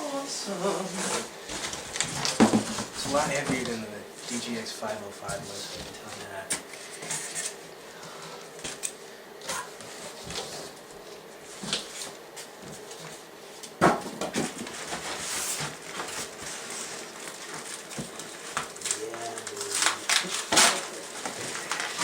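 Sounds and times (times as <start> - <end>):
packaging rustling: 1.0 - 4.5, 14.3 - 22.0.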